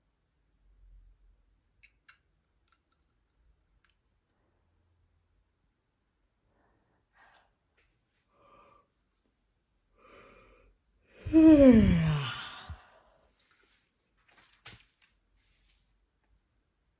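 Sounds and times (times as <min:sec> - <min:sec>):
faint breaths: 0:10.0 - 0:13.3
woman yawning: 0:11.2 - 0:12.8.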